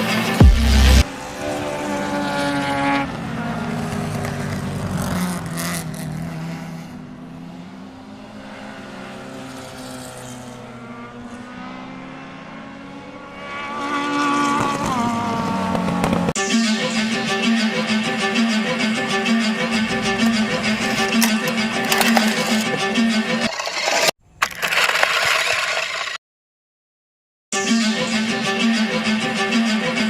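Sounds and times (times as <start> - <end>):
racing car engine revving: 0.0 - 16.4, 17.2 - 23.5.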